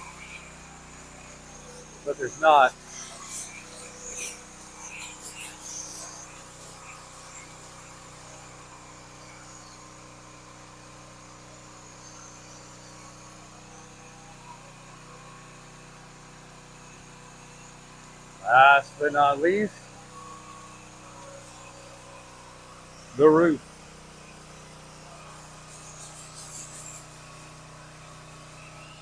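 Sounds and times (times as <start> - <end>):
machine hum: 0.0 - 15.6.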